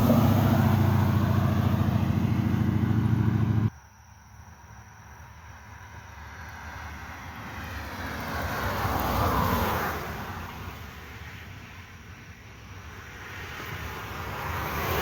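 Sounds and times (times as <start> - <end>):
vehicle passing: 0.0 - 3.7.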